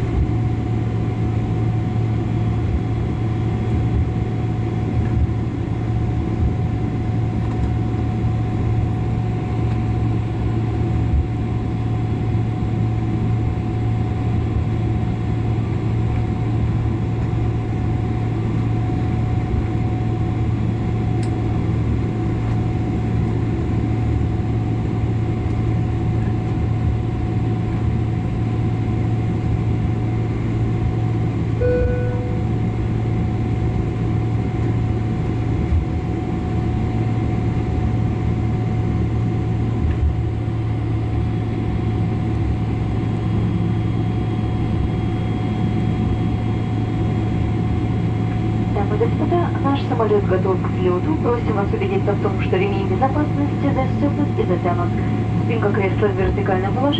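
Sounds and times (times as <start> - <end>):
aircraft cabin hum and rush: 0.0 - 56.9
short single chime tone: 31.6 - 32.6
thin high tone: 31.6 - 32.6.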